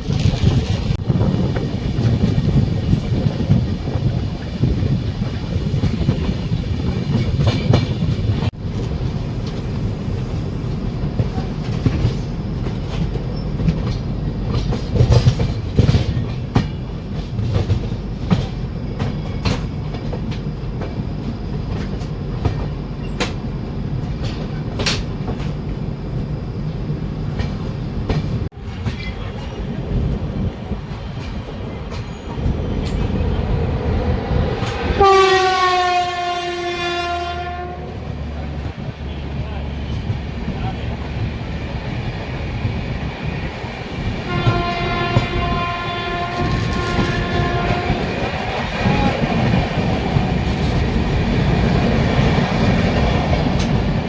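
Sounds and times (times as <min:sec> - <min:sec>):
train rumbling: 0:00.0 - 0:54.0
train horn: 0:34.8 - 0:38.0, 0:44.2 - 0:49.3.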